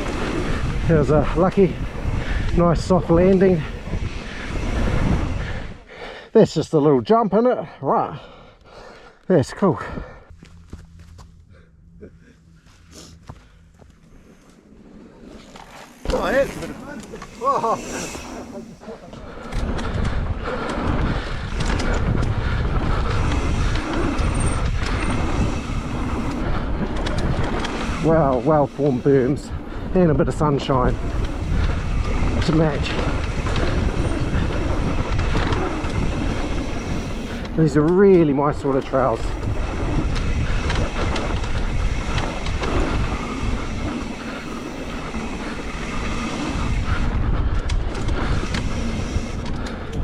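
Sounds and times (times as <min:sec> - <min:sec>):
wind rumble on microphone: 0:00.0 - 0:05.9, 0:15.9 - 0:50.0
bike tyres rolling on dirt: 0:00.0 - 0:06.1, 0:12.5 - 0:50.0.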